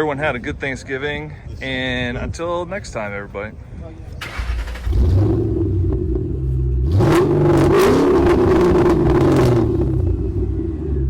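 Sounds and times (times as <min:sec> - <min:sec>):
car engine revving: 0:04.2 - 0:11.0.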